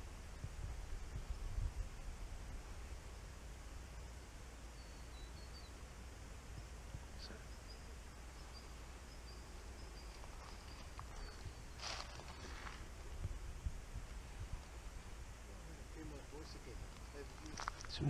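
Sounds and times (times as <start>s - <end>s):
steady background hiss: 0.0s - 18.0s
faint high chirps: 4.7s - 5.9s, 6.5s - 12.8s.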